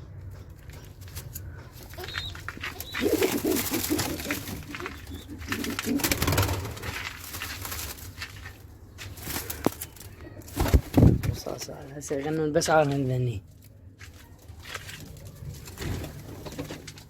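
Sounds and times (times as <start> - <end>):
doves cooing: 0.2 - 8.0
rustling: 1.0 - 11.5.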